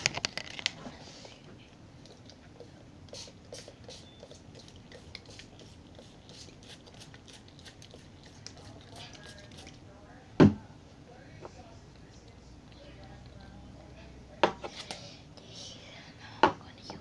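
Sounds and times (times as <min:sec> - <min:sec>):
glue mixture stirred in bowl: 0:01.9 - 0:09.9.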